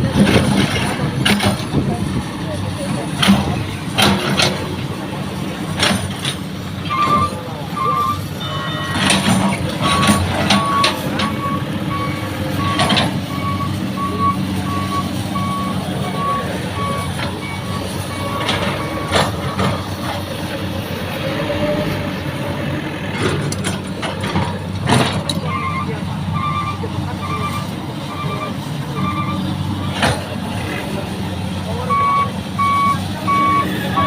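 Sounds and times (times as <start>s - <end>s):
diesel engine running: 0.0s - 34.0s
metallic knocks and clanks: 3.1s - 5.0s, 8.6s - 13.6s, 23.1s - 25.8s
backup alarm beeping: 6.9s - 9.2s, 9.8s - 19.2s, 25.4s - 30.0s, 31.9s - 34.0s.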